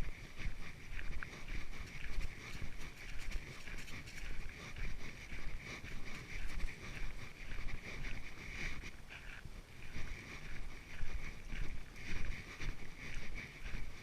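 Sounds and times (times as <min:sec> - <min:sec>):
footsteps on a trail: 0:00.0 - 0:14.0
wind rumble on microphone: 0:00.0 - 0:14.0.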